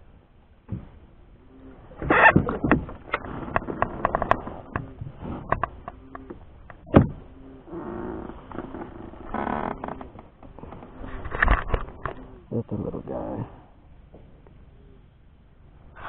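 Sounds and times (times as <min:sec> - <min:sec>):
fish thrashing against hull: 0:02.0 - 0:05.8.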